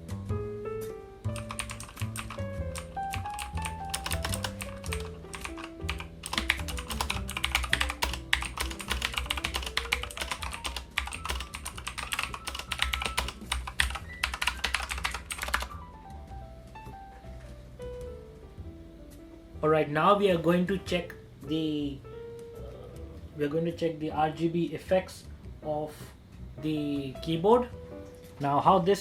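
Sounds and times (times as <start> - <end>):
background music: 0.0 - 29.0
clicky mechanical keyboard typing: 1.4 - 15.8.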